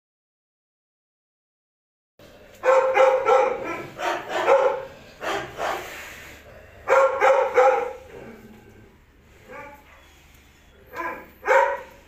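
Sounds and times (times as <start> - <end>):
dog barking: 2.6 - 6.0, 6.8 - 8.1, 9.5 - 10.0, 10.9 - 12.0.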